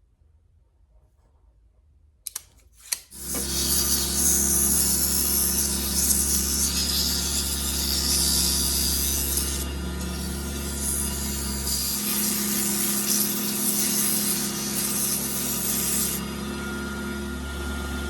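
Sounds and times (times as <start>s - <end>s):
power tool switch clicks: 2.3s - 3.5s
power tool rasping wood: 2.8s - 18.0s.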